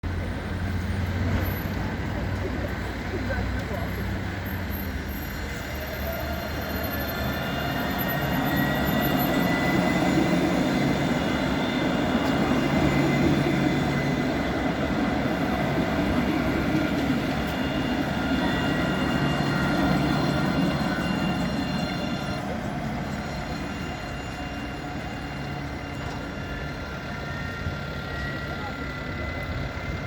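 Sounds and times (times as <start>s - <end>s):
tram running on rails: 0.0s - 30.0s.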